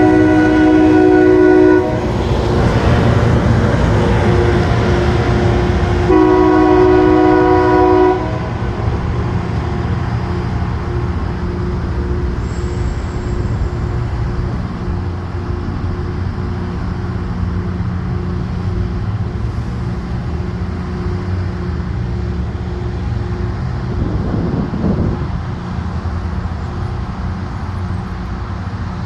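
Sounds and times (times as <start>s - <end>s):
train air horn blast: 0.0s - 2.2s, 4.2s - 8.8s
train low rumble: 0.0s - 29.0s.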